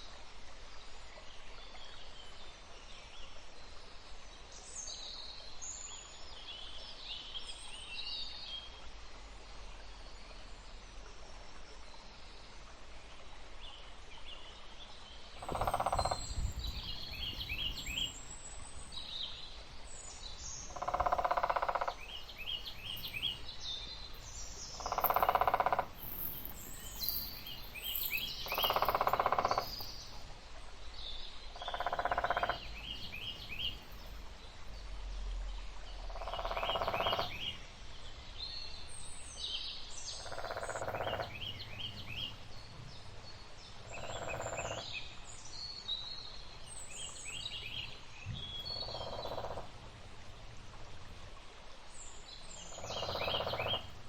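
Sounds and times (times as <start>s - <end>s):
small birds chirping: 15.4s - 30.3s, 31.0s - 34.9s, 35.9s - 49.6s, 52.1s - 54.0s.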